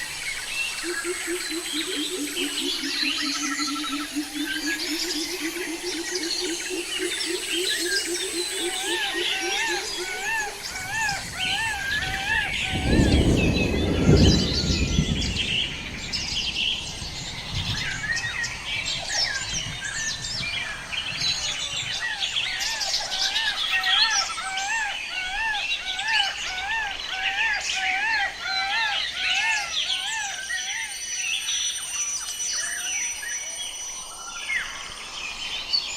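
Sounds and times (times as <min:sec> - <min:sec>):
chorus of high bird chirps: 0:00.0 - 0:35.9
loud low rumbling: 0:09.8 - 0:18.0.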